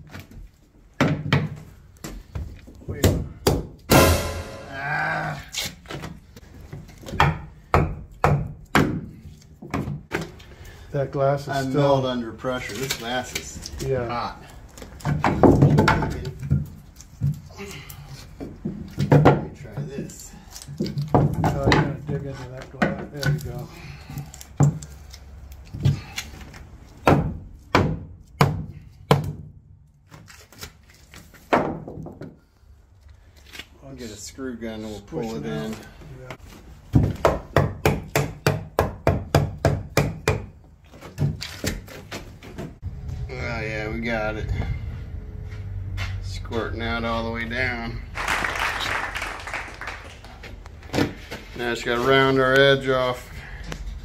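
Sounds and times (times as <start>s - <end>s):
hammer striking wood: 3.0s - 4.8s, 7.1s - 9.1s, 27.0s - 29.4s, 36.9s - 40.5s.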